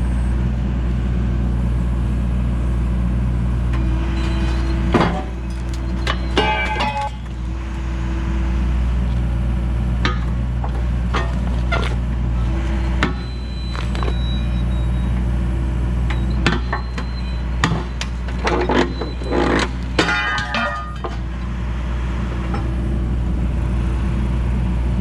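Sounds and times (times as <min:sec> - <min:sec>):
diesel engine running under load: 0:00.0 - 0:25.0
metal shear clanking on steel: 0:04.2 - 0:07.3, 0:10.0 - 0:12.0, 0:16.1 - 0:21.3.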